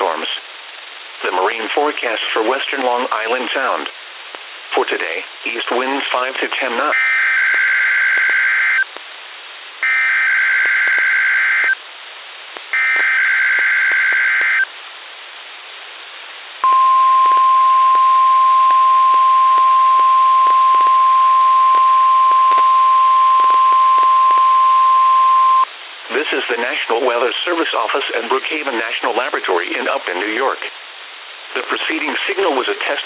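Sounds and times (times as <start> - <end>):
faint radio static hiss: 0.0 - 33.0
steady warning alarm tone: 6.9 - 8.9, 9.8 - 11.8, 12.8 - 14.7.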